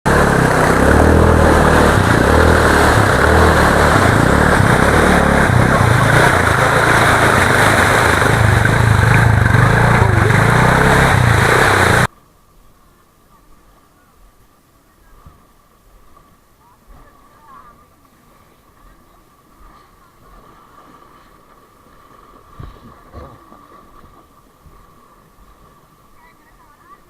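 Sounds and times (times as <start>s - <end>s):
loud engine running: 0.0s - 12.1s.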